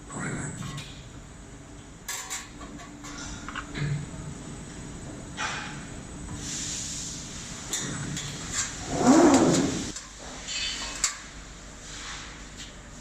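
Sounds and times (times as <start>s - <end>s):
hiss and low hum surge: 3.1s - 10.1s.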